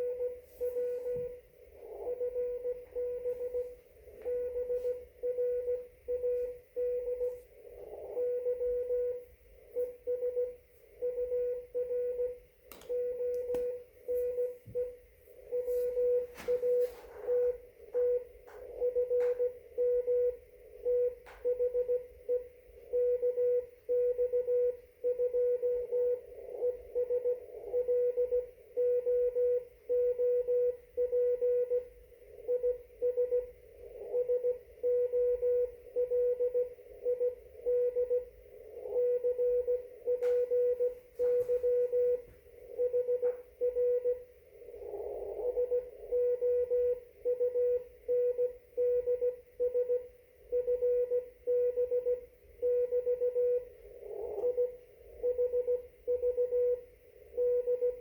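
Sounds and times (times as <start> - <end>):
morse code tone: 0.0 - 58.0.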